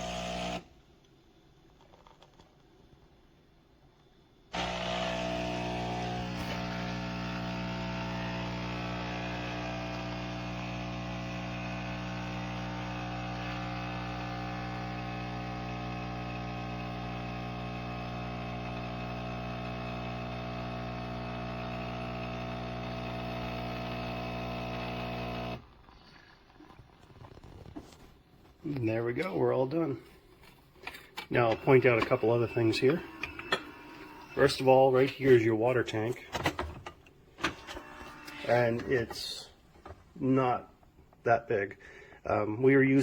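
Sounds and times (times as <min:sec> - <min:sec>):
espresso machine pump buzzing: 0:00.0 - 0:00.7, 0:04.5 - 0:25.8, 0:31.4 - 0:34.8, 0:37.4 - 0:39.3.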